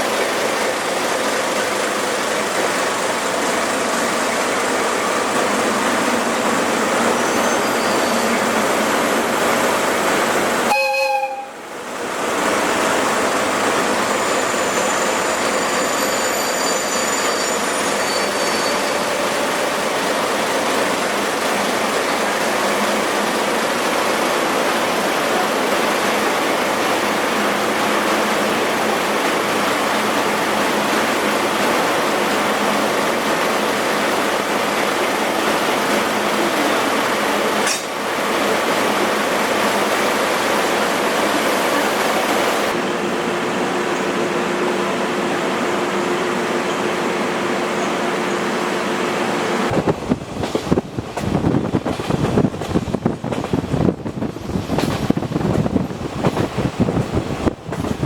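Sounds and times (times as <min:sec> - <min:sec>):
train coach rushing noise: 0:00.0 - 0:58.0
faint high squeals: 0:07.0 - 0:08.6, 0:14.1 - 0:19.3.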